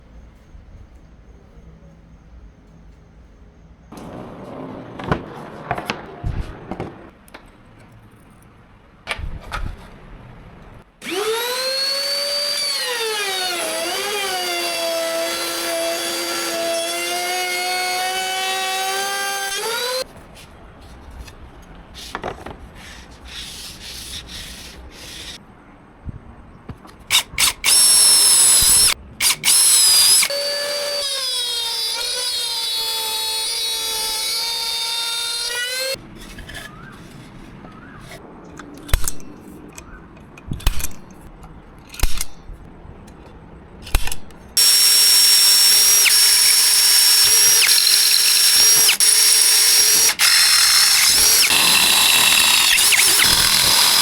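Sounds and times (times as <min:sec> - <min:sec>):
power tool motor whirring: 0:11.0 - 0:20.0, 0:27.1 - 0:36.0, 0:44.6 - 0:54.0.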